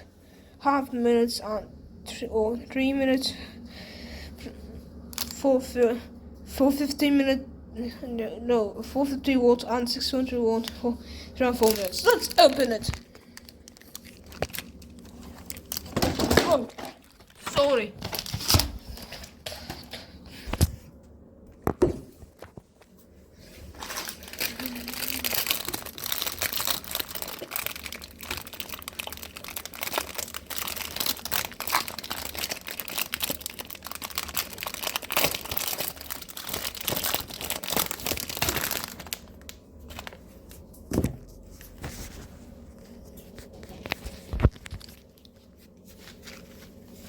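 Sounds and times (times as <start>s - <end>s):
plastic wrapper crinkling and tearing: 5.1s - 5.4s, 11.4s - 19.3s, 23.7s - 40.6s, 43.3s - 46.8s.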